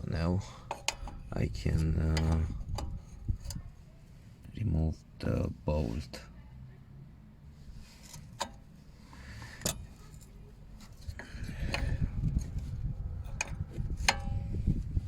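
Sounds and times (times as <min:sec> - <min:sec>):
metal tools clinking on a bolt: 0:00.6 - 0:03.6, 0:09.4 - 0:12.6, 0:13.2 - 0:14.4
low rumble: 0:11.0 - 0:15.0.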